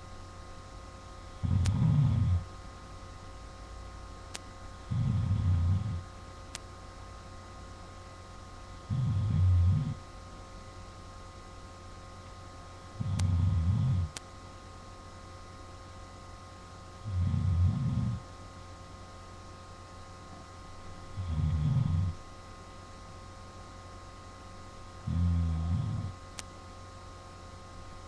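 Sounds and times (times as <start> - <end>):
steady electrical hum: 0.0 - 28.0
man snoring: 1.4 - 2.5, 4.9 - 6.0, 8.9 - 10.0, 13.0 - 14.2, 17.0 - 18.2, 21.2 - 22.2, 25.0 - 26.2.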